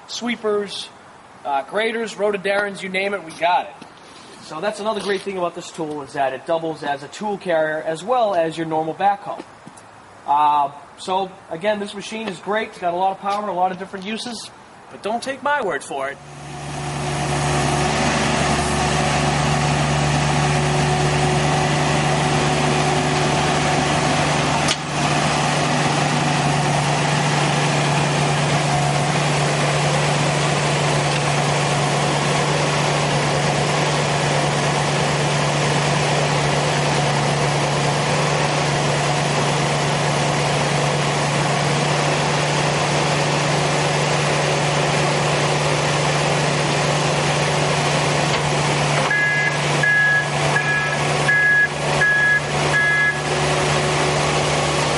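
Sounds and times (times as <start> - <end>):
backhoe diesel engine running: 16.2 - 54.9.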